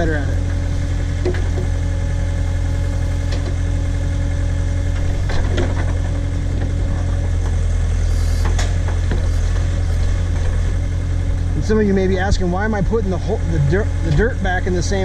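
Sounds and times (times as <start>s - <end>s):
backhoe engine humming: 0.0s - 15.0s.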